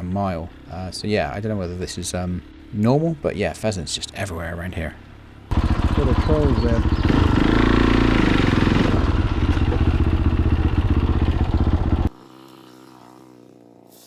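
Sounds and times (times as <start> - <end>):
motorcycle engine running: 0.0 - 3.3, 5.0 - 12.3.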